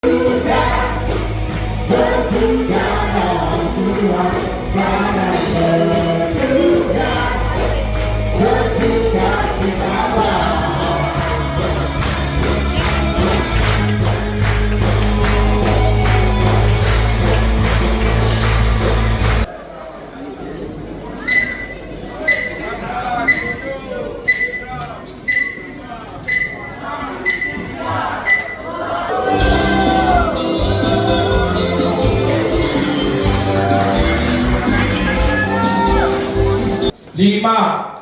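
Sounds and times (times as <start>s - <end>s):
gospel music with singing: 0.0s - 19.5s, 27.2s - 37.0s
heavy bass: 0.0s - 19.5s, 29.2s - 36.9s
percussion beat: 0.0s - 19.5s, 29.2s - 36.9s.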